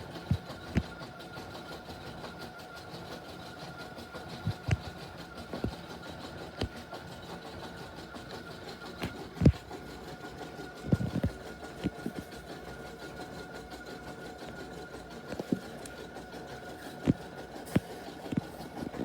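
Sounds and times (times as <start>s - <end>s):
machine humming: 0.0s - 19.0s.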